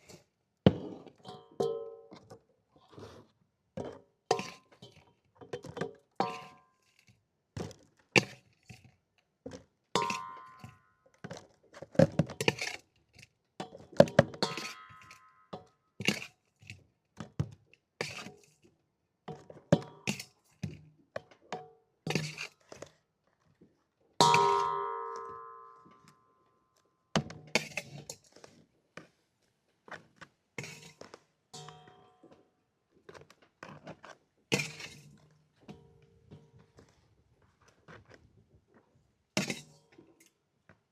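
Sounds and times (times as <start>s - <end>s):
hard knocks and ringing clinks: 24.2s - 26.3s.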